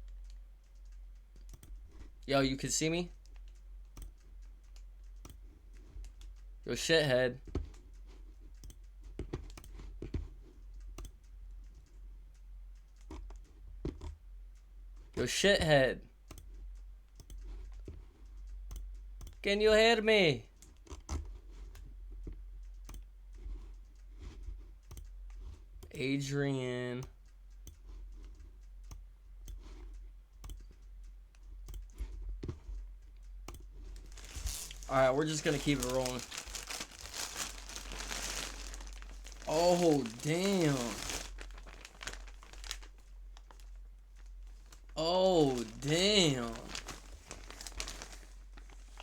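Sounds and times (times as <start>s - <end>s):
keyboard typing and clicks: 0.0s - 2.2s, 3.1s - 6.5s, 7.4s - 14.2s, 16.2s - 19.4s, 20.6s - 26.0s, 27.0s - 34.0s
low steady hum: 0.0s - 49.0s.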